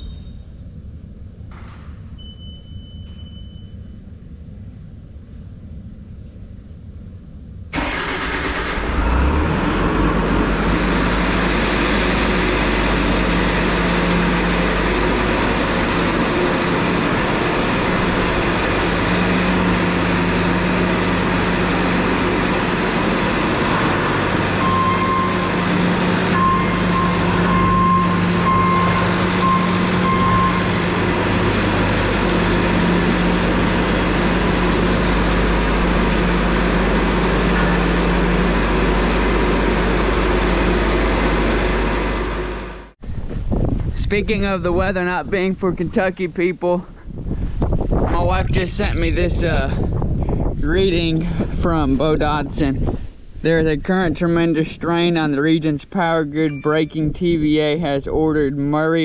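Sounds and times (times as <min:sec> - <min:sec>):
vehicle chime beeping: 0:00.0 - 0:00.5, 0:02.2 - 0:03.9, 0:24.6 - 0:25.7, 0:26.3 - 0:31.0, 0:56.4 - 0:57.1
truck engine starting and running: 0:07.5 - 0:59.0.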